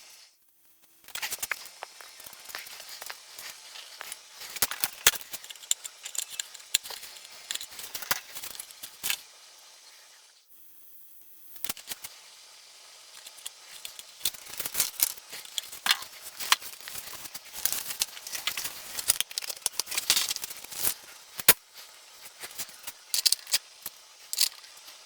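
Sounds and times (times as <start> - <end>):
small clicks taps and scrapes: 1.1 - 9.3, 13.2 - 21.6, 22.2 - 25.0.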